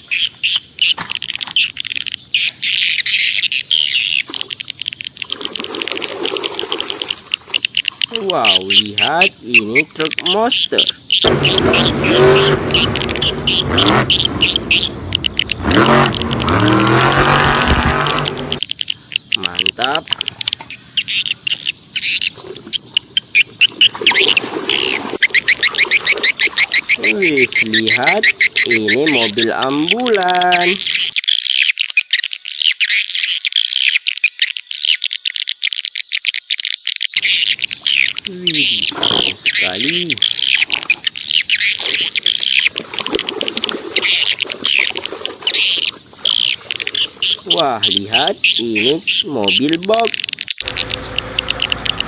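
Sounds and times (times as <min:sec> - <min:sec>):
birds chirping: 0:00.0 - 0:31.7, 0:37.2 - 0:52.0
lower rising and falling calls: 0:07.7 - 0:31.1, 0:37.2 - 0:52.0.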